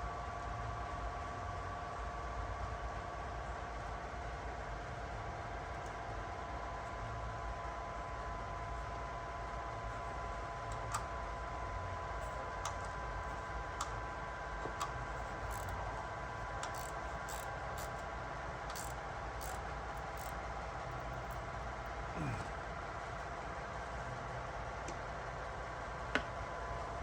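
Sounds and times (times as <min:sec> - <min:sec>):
steady background hum: 0:00.0 - 0:27.0
light clicks and ticks: 0:16.6 - 0:18.0.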